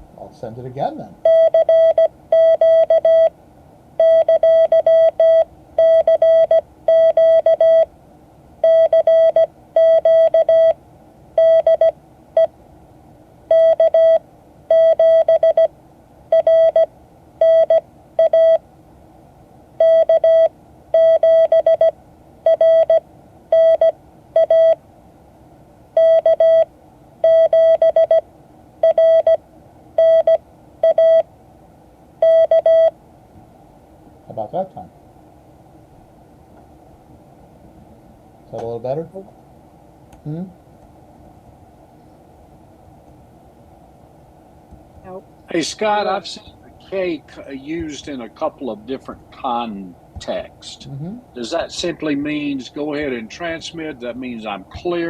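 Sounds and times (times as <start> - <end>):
morse code beeps: 1.2 - 3.3, 4.0 - 7.9, 8.6 - 10.8, 11.4 - 11.9, 13.5 - 15.7, 16.3 - 18.6, 19.8 - 21.9, 22.5 - 24.8, 26.0 - 28.2, 28.8 - 29.4, 30.0 - 31.2, 32.2 - 32.9.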